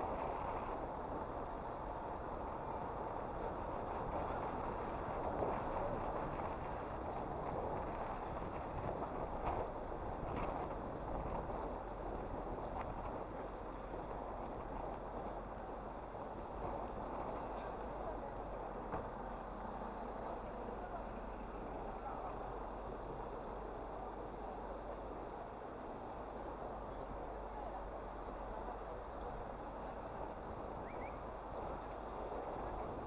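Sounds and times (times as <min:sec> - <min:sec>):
street traffic rushing: 0:11.6 - 0:33.0.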